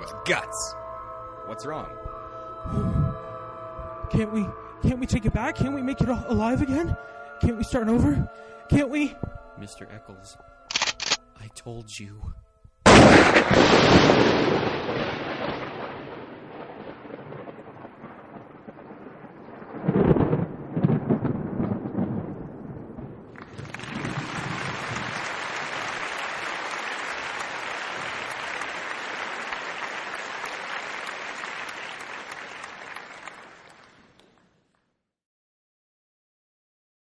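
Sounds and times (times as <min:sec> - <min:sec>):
thunder rumbling boom: 0:12.9 - 0:25.8
rain hiss: 0:23.4 - 0:34.1.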